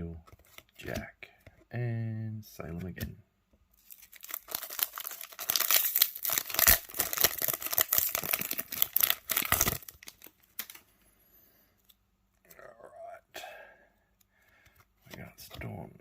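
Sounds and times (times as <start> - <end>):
card pack wrapper tearing and crinkling: 3.8 - 10.8.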